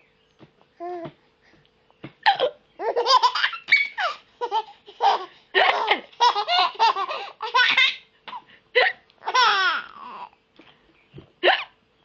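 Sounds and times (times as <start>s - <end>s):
woman hiccuping: 2.2s - 2.6s, 11.4s - 11.8s
baby laughing: 2.3s - 10.3s.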